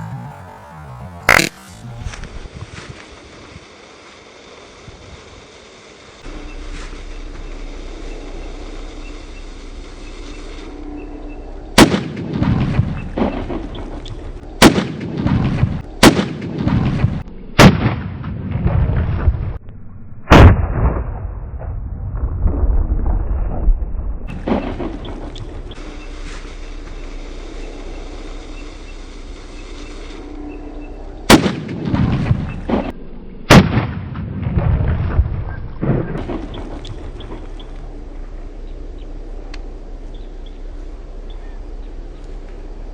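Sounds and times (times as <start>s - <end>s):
explosive bangs: 0.0s - 2.5s, 6.2s - 19.6s, 20.3s - 23.7s, 24.3s - 39.4s
steady background noise: 0.0s - 17.5s, 24.3s - 33.8s, 36.2s - 42.9s
steady outdoor noise: 0.0s - 42.9s
rumbling echo: 6.2s - 42.9s.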